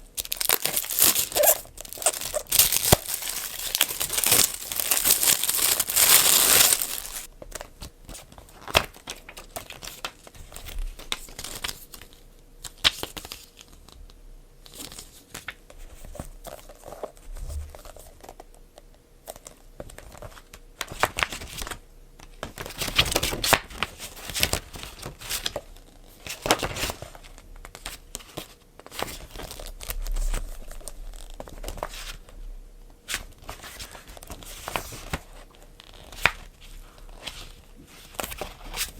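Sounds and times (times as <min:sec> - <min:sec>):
packaging crinkling and tearing: 0:00.0 - 0:13.8.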